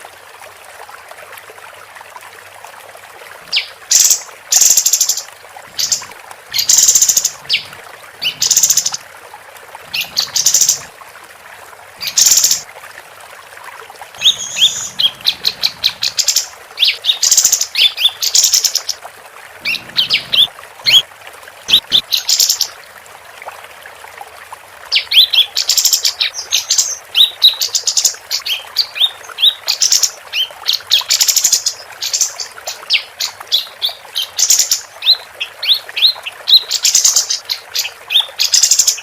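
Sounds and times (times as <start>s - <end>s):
bird calling: 14.2s - 18.9s, 19.6s - 21.0s.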